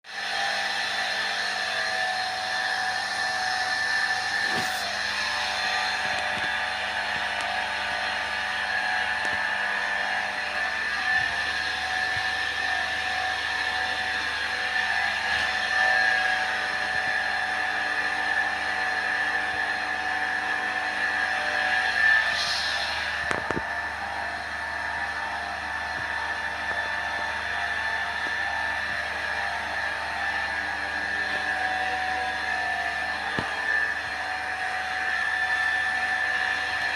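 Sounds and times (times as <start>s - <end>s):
small motor whirring: 0.2s - 23.9s.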